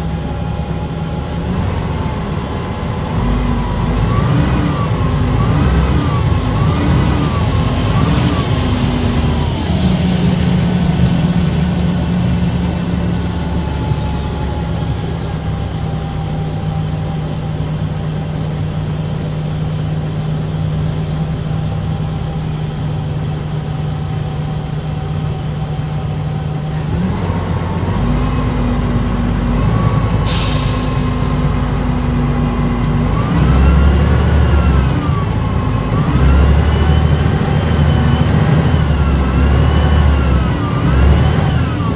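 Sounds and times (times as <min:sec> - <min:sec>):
bus engine drone with gear whine: 0:00.0 - 0:41.9
hiss of air: 0:30.3 - 0:31.7.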